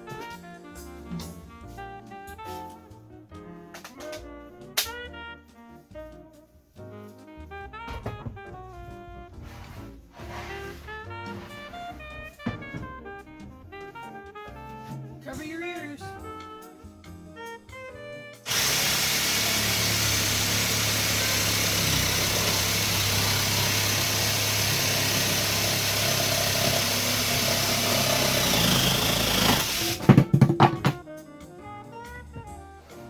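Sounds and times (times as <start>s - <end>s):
wood knocking: 7.7s - 14.1s, 27.7s - 31.0s
electric power saw cutting wood: 18.5s - 30.2s.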